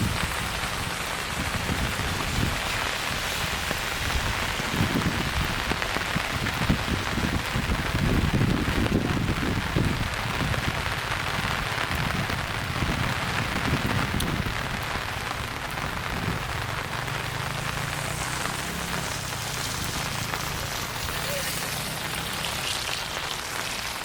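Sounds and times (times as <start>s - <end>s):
rain on pavement: 0.0s - 24.0s.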